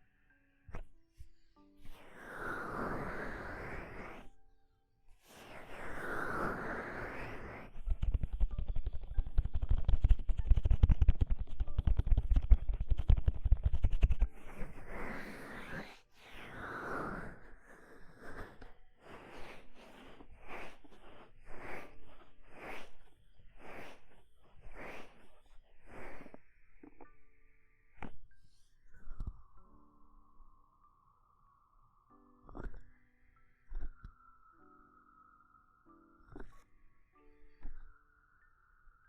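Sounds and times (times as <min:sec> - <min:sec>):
hands rubbing on microphone: 0:05.2 - 0:27.0
muffled crackling taps: 0:07.8 - 0:14.3.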